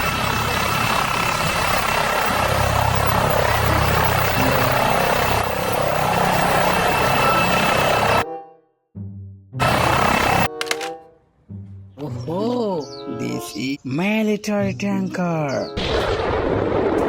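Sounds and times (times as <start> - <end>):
toy helicopter rotor sound effect: 9.6 - 10.8.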